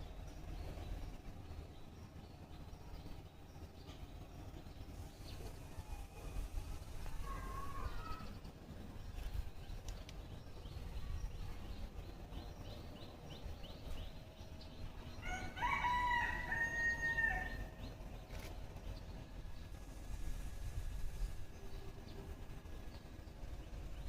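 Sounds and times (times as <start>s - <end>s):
rooster crowing: 15.2s - 17.7s.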